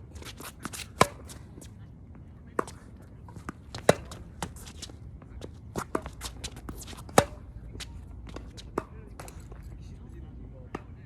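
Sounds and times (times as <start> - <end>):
footsteps on court: 0.0 - 9.8
tennis racket striking ball: 0.2 - 1.4, 3.4 - 4.9, 5.7 - 9.6
balls bouncing: 3.4 - 9.7.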